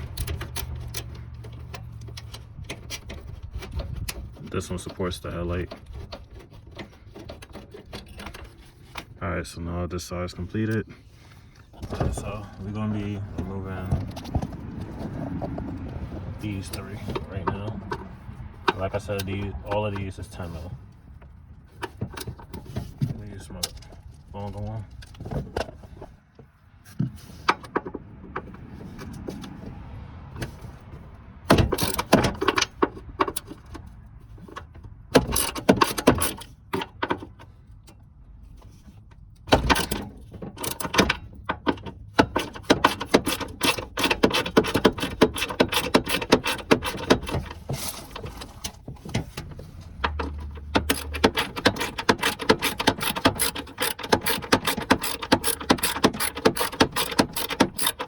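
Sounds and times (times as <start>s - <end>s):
hand ratchet clicking: 42.2s - 47.7s, 50.0s - 58.0s.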